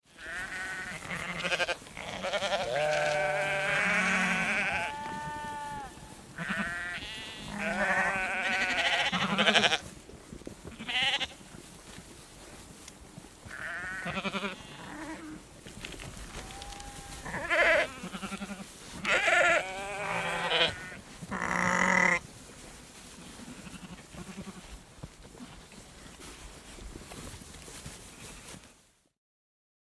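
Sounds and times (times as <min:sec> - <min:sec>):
sheep and goats bleating: 0:00.1 - 0:09.9, 0:10.6 - 0:11.5, 0:13.5 - 0:15.4, 0:16.3 - 0:22.2, 0:23.2 - 0:24.8.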